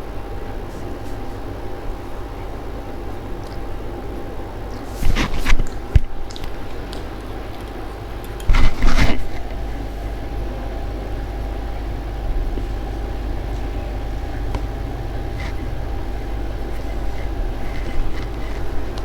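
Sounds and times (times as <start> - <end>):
steady background hum: 0.0 - 19.0
person eating: 4.7 - 10.0.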